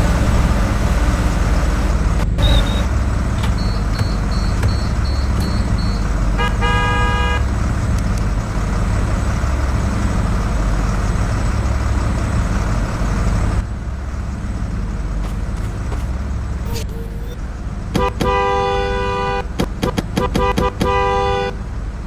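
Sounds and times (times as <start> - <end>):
rapid high-pitched beeping: 0.0 - 2.9
bus horn: 0.0 - 3.0, 6.2 - 7.7, 18.0 - 21.8
bus engine idling: 0.0 - 17.9.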